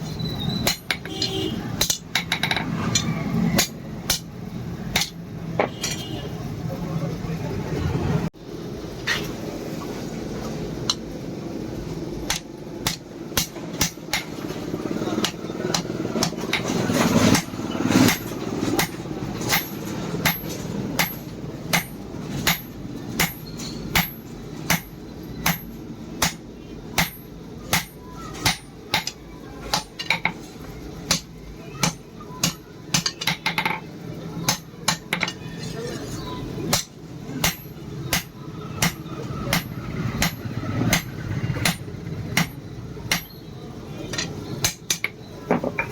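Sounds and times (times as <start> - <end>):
hammer striking steel on anvil: 0.6 - 4.3, 4.9 - 6.0, 17.3 - 30.2, 36.7 - 41.8, 42.4 - 43.4.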